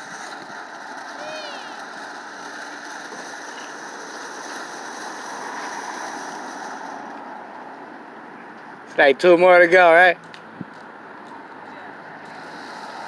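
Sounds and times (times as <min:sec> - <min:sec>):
firework fountain hissing: 0:00.0 - 0:07.9, 0:12.2 - 0:13.0.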